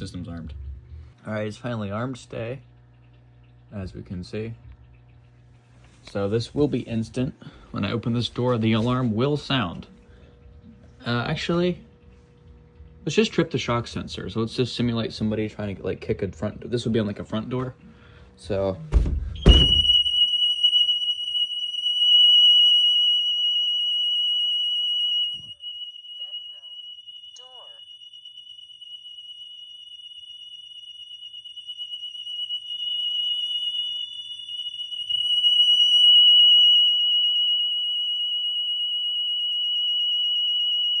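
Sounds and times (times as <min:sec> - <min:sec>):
high-pitched alarm siren: 0:18.4 - 0:41.0
thump of blow on door: 0:18.9 - 0:20.1.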